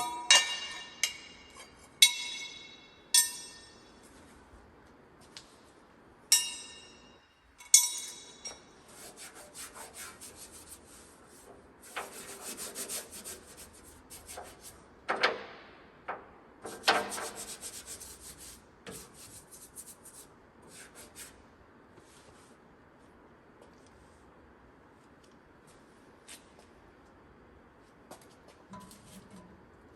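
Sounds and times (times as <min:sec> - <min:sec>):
ringing metallic clinks: 0:00.0 - 0:04.0, 0:06.3 - 0:08.7.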